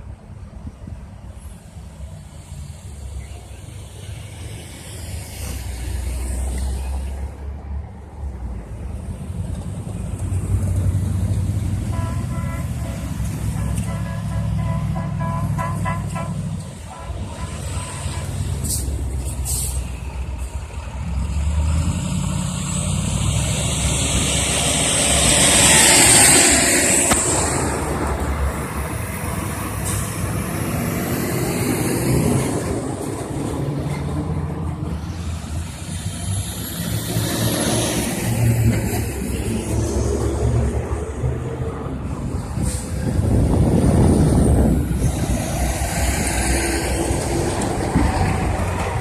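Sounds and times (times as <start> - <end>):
diesel engines running: 0.0 - 49.0.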